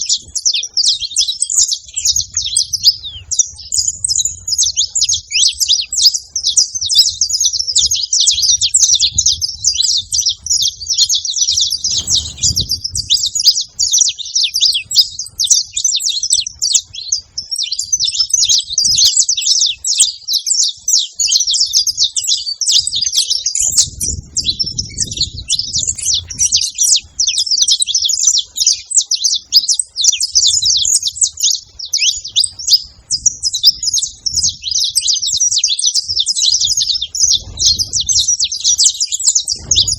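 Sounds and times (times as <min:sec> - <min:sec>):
finches chirping: 0:00.0 - 0:39.9
faint low rumbles: 0:09.1 - 0:13.9, 0:36.6 - 0:39.9.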